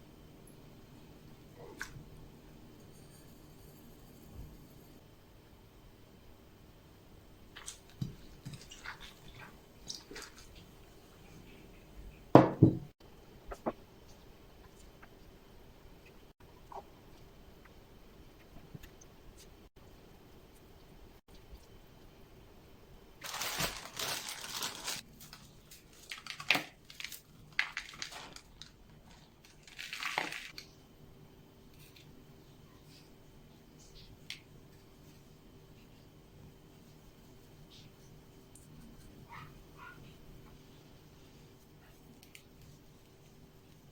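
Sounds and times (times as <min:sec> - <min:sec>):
rustling and crinkling: 0:23.2 - 0:30.8.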